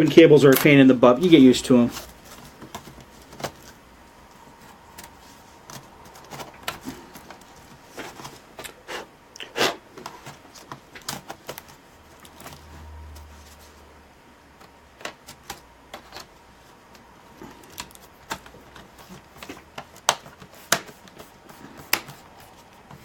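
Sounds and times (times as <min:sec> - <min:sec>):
plastic laptop parts clicking: 0:04.9 - 0:08.3, 0:17.6 - 0:21.2.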